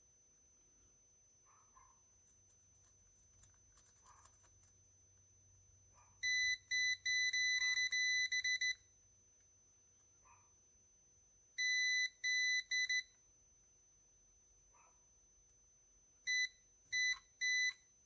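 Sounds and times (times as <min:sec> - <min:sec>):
multimeter beeps: 0:06.2 - 0:08.9, 0:11.6 - 0:13.2, 0:16.2 - 0:17.9.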